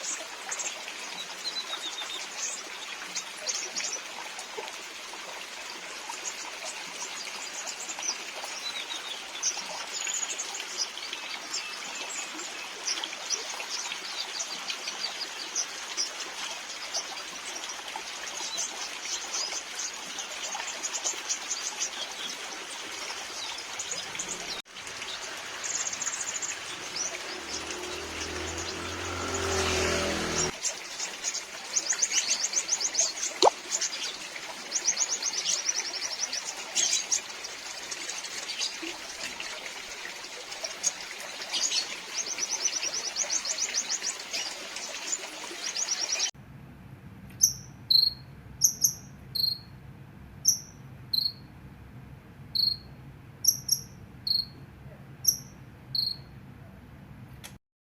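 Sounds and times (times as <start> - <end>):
trickling water: 0.0 - 46.4
birds chirping and twittering: 6.1 - 39.6, 40.6 - 46.3, 47.4 - 49.7, 50.4 - 51.4, 52.6 - 54.6, 55.2 - 56.3
steady rain: 21.4 - 33.2.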